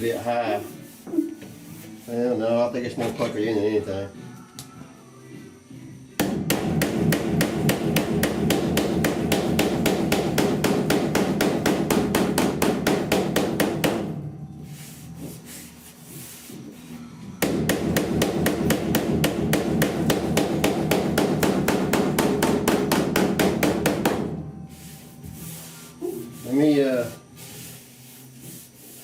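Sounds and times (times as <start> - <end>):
hammer tapping sheet metal: 6.2 - 14.2, 17.4 - 24.5.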